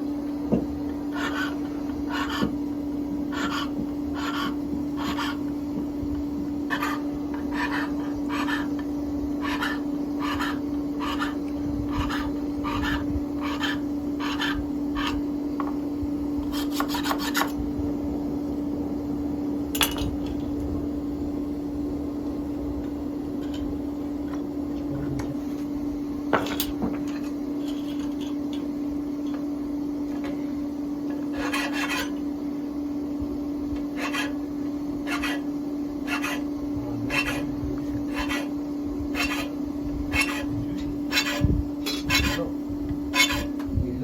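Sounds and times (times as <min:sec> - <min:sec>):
steady hum: 0:00.0 - 0:44.0
metal being filed by hand: 0:01.1 - 0:02.6, 0:03.3 - 0:05.5, 0:06.7 - 0:15.2, 0:16.4 - 0:17.6, 0:31.2 - 0:32.2, 0:33.9 - 0:34.4, 0:35.0 - 0:43.6.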